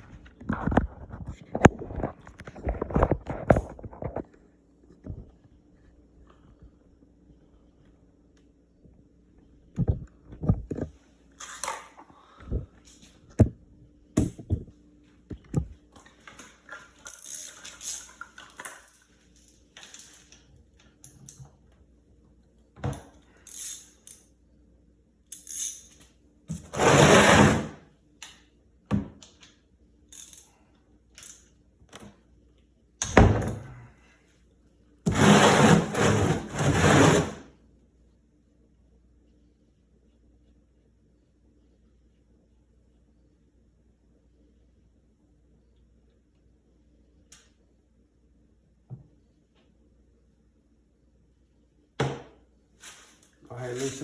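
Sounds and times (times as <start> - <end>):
objects being handled and set down: 0.0 - 5.6, 14.2 - 21.6, 52.0 - 54.0
scraping or rustling: 26.5 - 27.8, 35.1 - 37.4.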